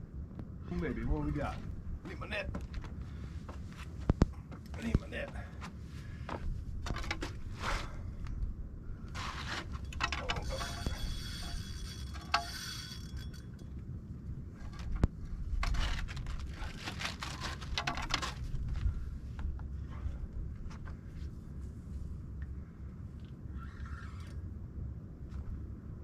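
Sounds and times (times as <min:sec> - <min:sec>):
steady low rumble: 0:00.0 - 0:23.6, 0:24.3 - 0:26.0
fishing gear rattling and scraping: 0:09.1 - 0:13.6, 0:14.6 - 0:19.1.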